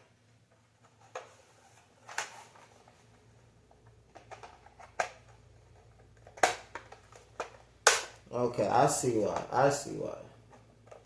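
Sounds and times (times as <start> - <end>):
plastic parts clicking and knocking: 3.7 - 8.2.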